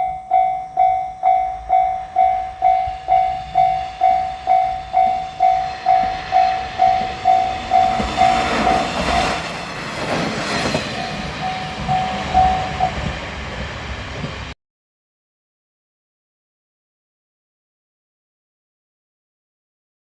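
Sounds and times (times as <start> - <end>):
level crossing warning bell: 0.0 - 13.3
diesel railcar passing: 0.0 - 14.6.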